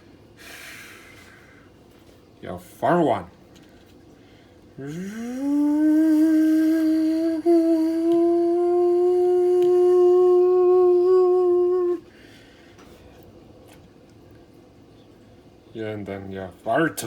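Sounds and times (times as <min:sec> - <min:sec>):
man humming jet engine imitation: 0:04.8 - 0:12.1.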